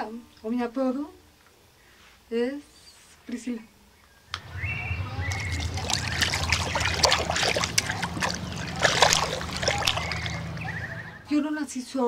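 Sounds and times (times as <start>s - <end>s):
low steady hum: 2.4s - 11.5s
water trickling and splashing: 4.4s - 11.1s.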